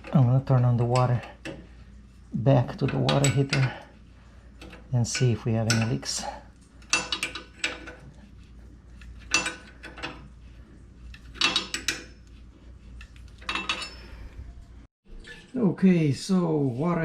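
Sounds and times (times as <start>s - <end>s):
low steady hum: 0.0s - 17.0s
metal clanks and clinks: 2.7s - 3.9s, 4.6s - 8.1s, 9.0s - 10.3s, 11.2s - 12.2s, 13.0s - 14.4s.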